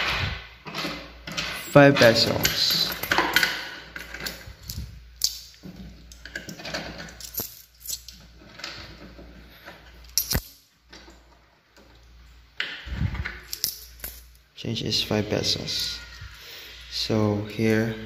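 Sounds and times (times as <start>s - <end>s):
metal coins clinking: 2.0s - 8.7s, 10.0s - 10.7s, 13.2s - 14.5s.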